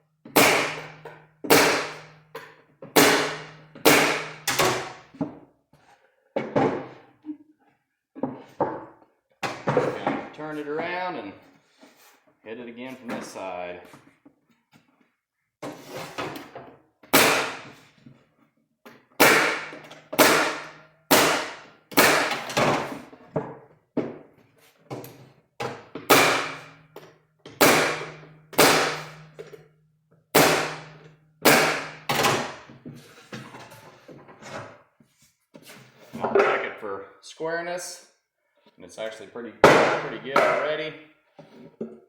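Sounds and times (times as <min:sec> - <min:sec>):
pneumatic stapler shots: 0:26.1 - 0:26.7, 0:27.6 - 0:29.2.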